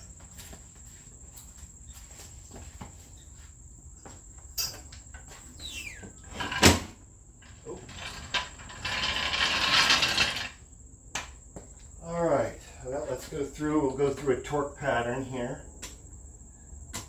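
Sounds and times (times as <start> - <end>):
short falling squeak: 5.5 - 6.7.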